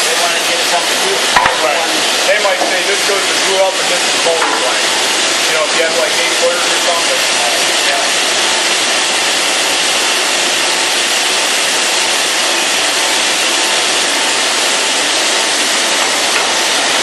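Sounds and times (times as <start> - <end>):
saw running: 0.0 - 17.0.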